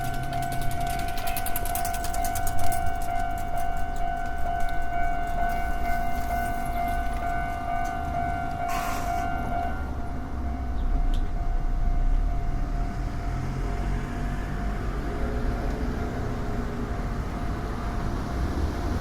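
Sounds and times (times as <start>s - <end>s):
crossing warning bell ringing: 0.0s - 19.0s.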